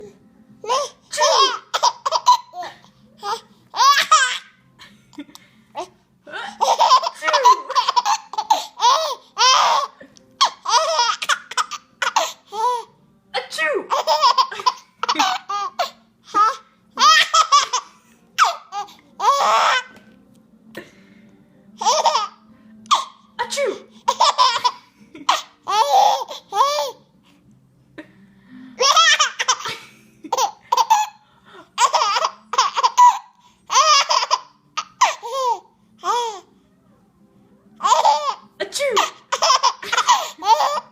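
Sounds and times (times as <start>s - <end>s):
baby laughing: 0.6s - 4.5s, 5.8s - 12.9s, 13.9s - 20.0s, 21.8s - 27.1s, 28.8s - 31.2s, 31.8s - 36.5s, 37.8s - 40.9s.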